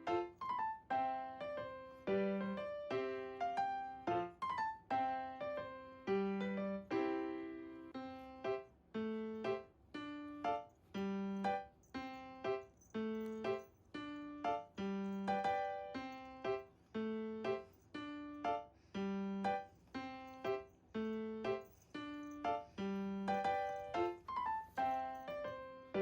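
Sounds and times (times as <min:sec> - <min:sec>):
gentle piano melody: 0:00.0 - 0:26.0.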